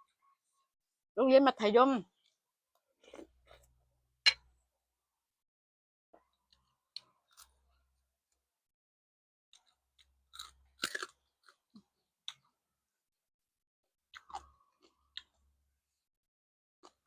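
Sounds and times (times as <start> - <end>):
person chewing crunchy food: 2.2 - 3.8, 9.6 - 12.6, 14.0 - 15.6.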